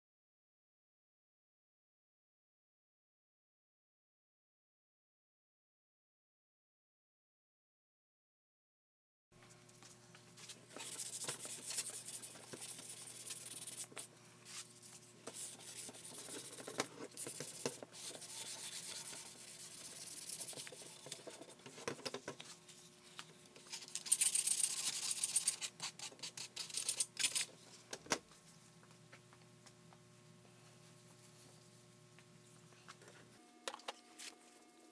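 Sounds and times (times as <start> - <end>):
hand rubbing with abrasive: 10.8 - 21.6.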